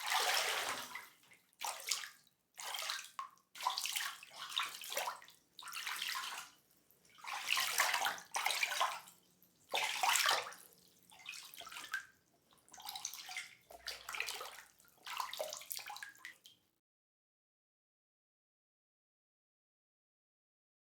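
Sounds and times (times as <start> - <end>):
water splashing: 0.0 - 1.1.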